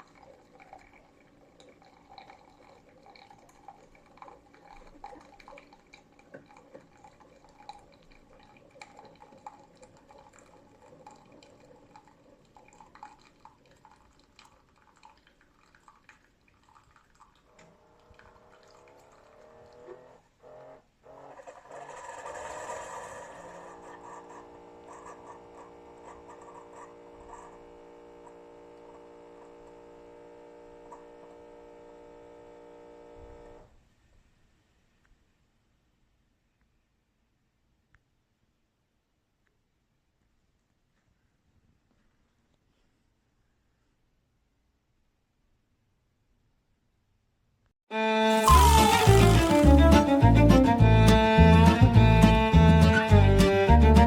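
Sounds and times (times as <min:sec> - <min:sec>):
coffee maker trickling and dripping: 0:00.0 - 0:20.2, 0:21.6 - 0:33.6.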